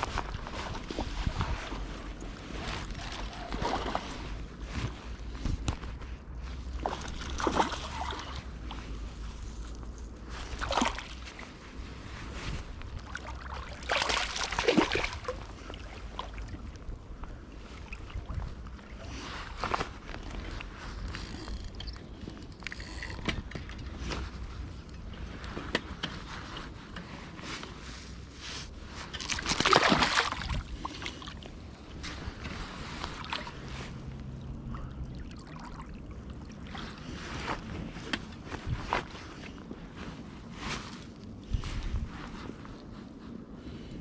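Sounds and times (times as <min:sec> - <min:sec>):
low steady rumble: 0:00.0 - 0:29.4, 0:30.1 - 0:44.0
water sloshing and splashing: 0:00.0 - 0:43.1.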